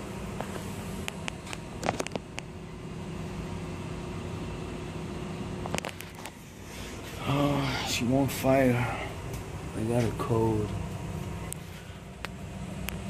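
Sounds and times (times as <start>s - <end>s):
mechanical equipment hum: 0.0s - 13.0s.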